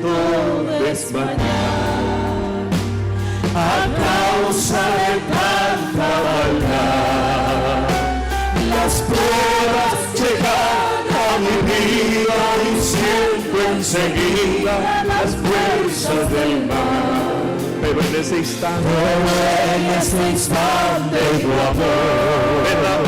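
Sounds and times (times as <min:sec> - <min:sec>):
instrumental accompaniment: 0:00.0 - 0:23.0
several voices singing worship song: 0:00.0 - 0:23.0.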